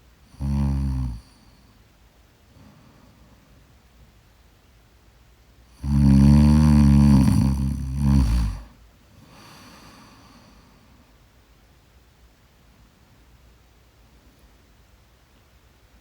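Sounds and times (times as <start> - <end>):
deep rattling snore: 0.4 - 1.3, 5.8 - 8.8
soft breath: 1.2 - 3.7, 8.2 - 11.2.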